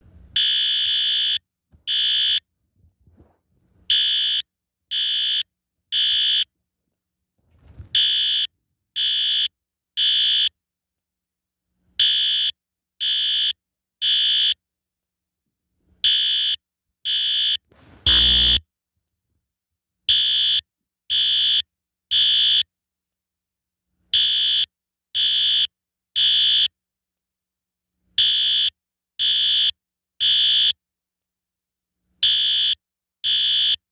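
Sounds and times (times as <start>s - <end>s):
shrill fire alarm horn blasts: 17.1s - 18.6s
dull thump: 17.7s - 18.6s.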